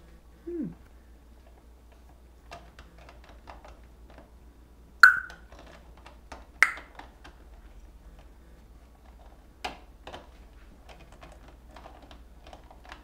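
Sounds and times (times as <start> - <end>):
loud sharp snap: 6.6 - 6.9.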